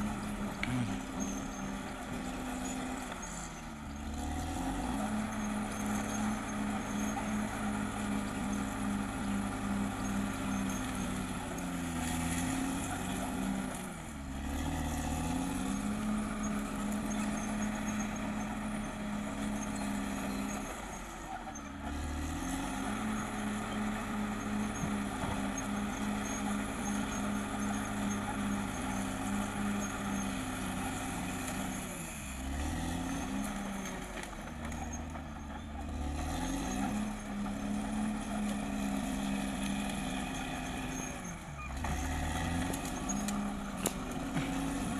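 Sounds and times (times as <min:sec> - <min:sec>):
bulldozer diesel engine working: 0:00.0 - 0:44.9.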